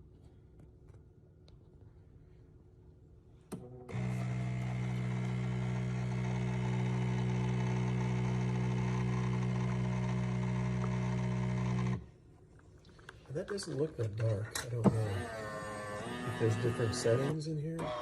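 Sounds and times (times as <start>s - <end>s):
espresso machine electric hum: 3.6s - 12.1s.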